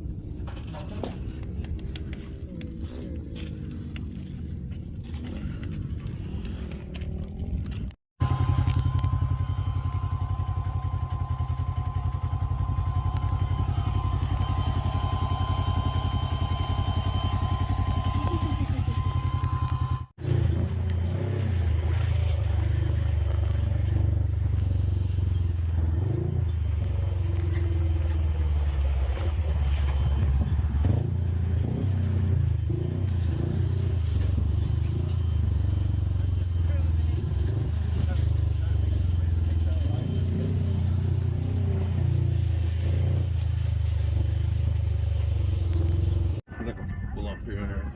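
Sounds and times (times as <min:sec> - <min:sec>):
off-road vehicle engine drone: 0:00.0 - 0:47.9
thin high whine: 0:08.2 - 0:20.1.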